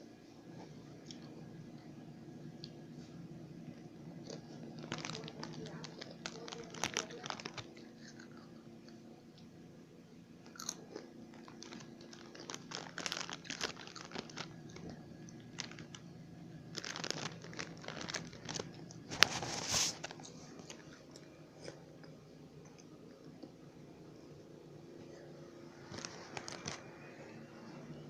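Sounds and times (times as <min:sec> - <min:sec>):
person chewing crunchy snack: 0:04.2 - 0:08.6, 0:10.4 - 0:16.0, 0:16.7 - 0:23.5.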